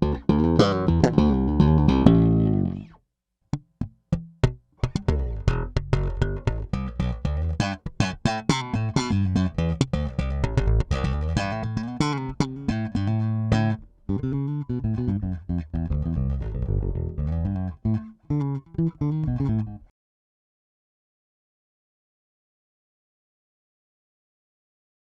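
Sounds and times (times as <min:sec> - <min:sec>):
slap bass notes: 0:00.0 - 0:19.9.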